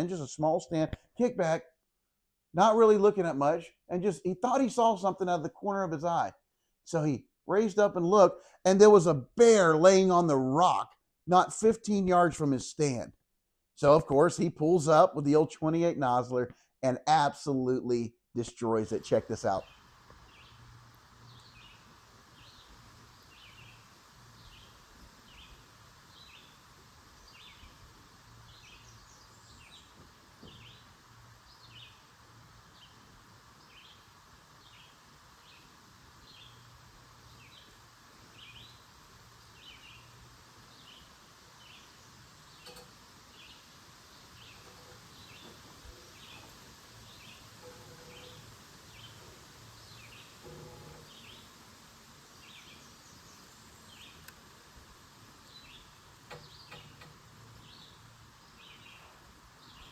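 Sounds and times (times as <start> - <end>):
faint woods background hiss: 0.0 - 13.1, 13.8 - 59.9.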